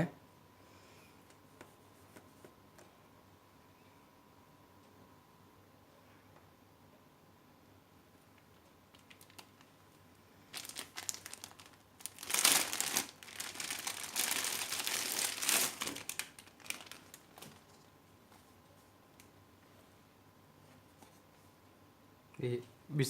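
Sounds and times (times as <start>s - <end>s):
packaging rustling: 8.9s - 9.7s, 10.5s - 17.9s.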